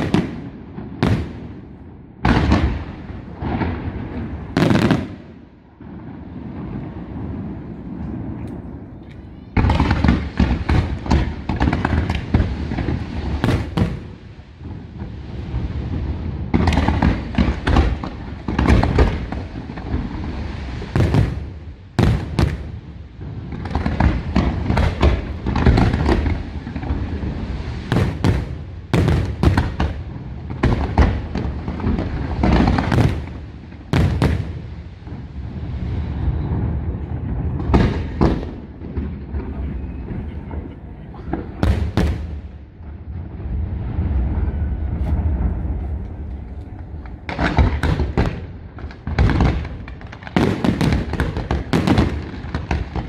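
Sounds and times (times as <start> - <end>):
fireworks bursting and crackling: 0.0 - 53.0
deep rumble: 42.7 - 47.9.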